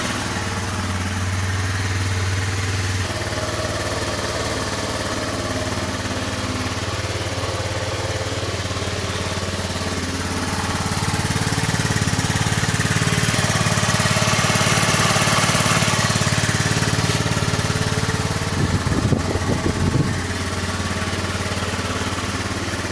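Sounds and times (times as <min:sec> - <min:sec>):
scooter engine idling and revving: 0:00.0 - 0:22.9.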